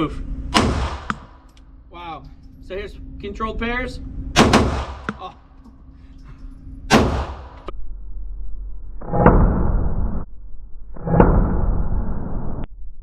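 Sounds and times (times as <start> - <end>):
pistol shot: 0.6 - 1.4, 4.4 - 5.2, 6.9 - 7.7
slowed-down gunshot booms: 0.6 - 1.4, 6.9 - 7.7.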